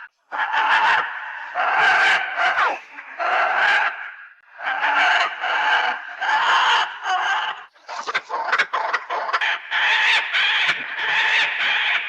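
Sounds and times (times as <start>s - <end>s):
monster bird screeching: 2.5s - 2.9s
rapid clucking squawks: 4.7s - 12.0s.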